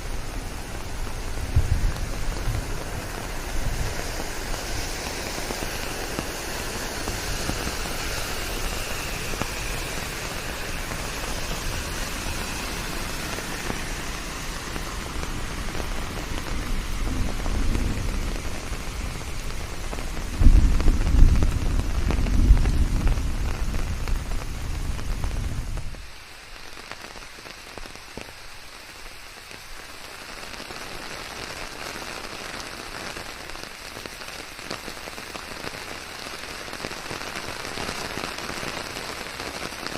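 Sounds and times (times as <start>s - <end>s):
steady rain falling: 0.0s - 39.9s
deep rumble: 10.9s - 26.0s.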